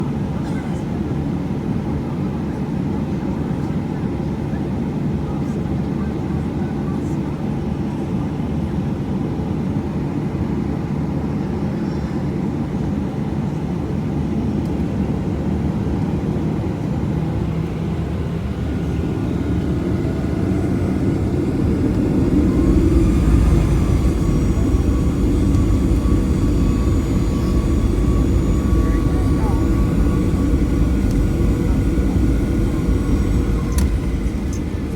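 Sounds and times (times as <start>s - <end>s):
jet engines rumbling: 12.4s - 34.9s
high whining tones: 19.1s - 34.9s.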